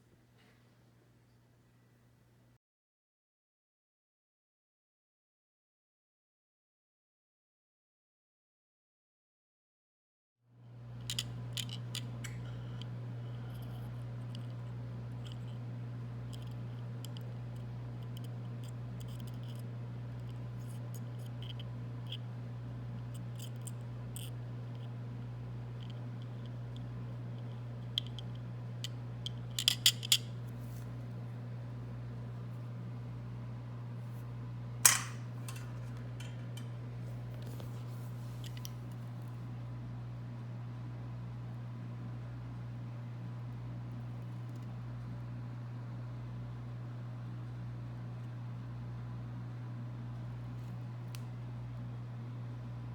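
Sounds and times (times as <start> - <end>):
steady low hum: 10.6 - 52.9.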